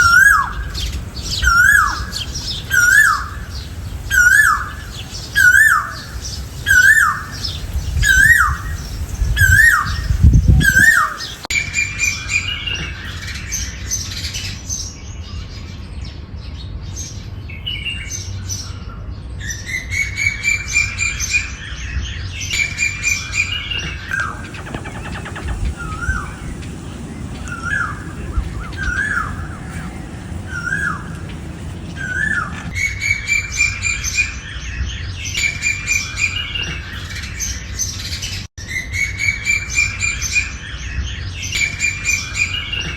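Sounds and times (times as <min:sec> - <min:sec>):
bird swooping call: 0:00.0 - 0:03.5, 0:04.1 - 0:08.7, 0:09.4 - 0:11.5, 0:24.1 - 0:33.8
shrill bird chattering: 0:00.0 - 0:08.8, 0:09.4 - 0:11.5, 0:24.1 - 0:34.2.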